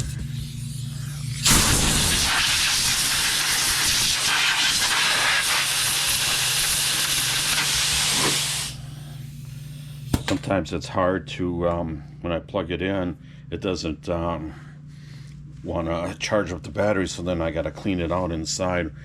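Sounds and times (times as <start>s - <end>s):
low steady hum: 0.0s - 3.5s, 6.0s - 19.0s
compressed air hissing from nozzle: 0.0s - 10.3s.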